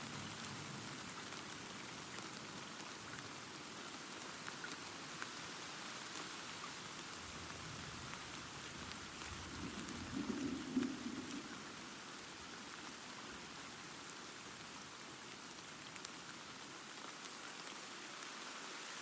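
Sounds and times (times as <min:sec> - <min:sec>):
steady rain falling: 0:00.0 - 0:19.0
low rumble of thunder: 0:08.8 - 0:12.1.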